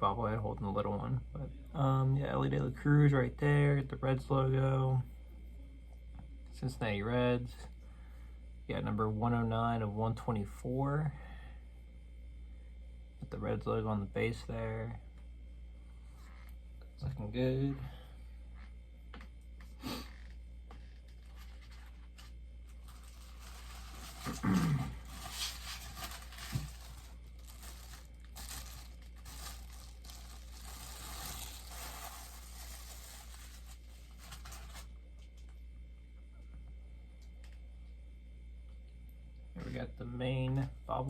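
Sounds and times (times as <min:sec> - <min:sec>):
packaging rustling and crinkling: 0:20.8 - 0:35.5.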